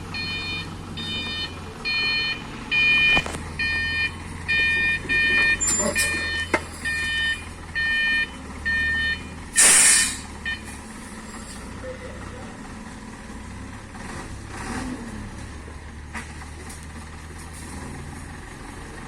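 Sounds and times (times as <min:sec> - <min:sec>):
diesel engine running: 0:00.0 - 0:19.0
reversing alarm beeping: 0:00.1 - 0:11.6
air brake hiss: 0:09.5 - 0:10.3.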